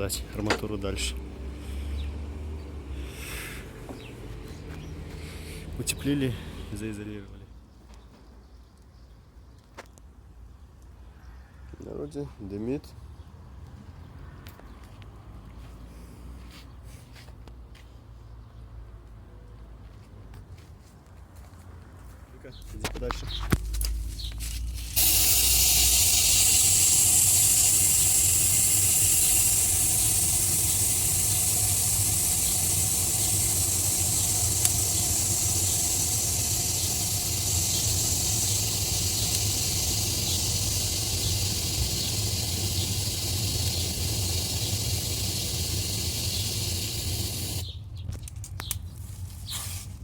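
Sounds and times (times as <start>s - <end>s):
fire burning hard: 24.8s - 47.6s.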